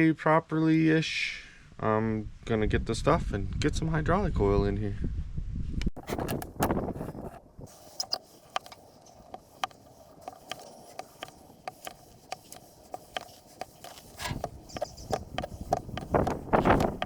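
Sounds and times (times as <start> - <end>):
rustling scrape: 6.0 - 17.0
footsteps walking: 8.1 - 17.0.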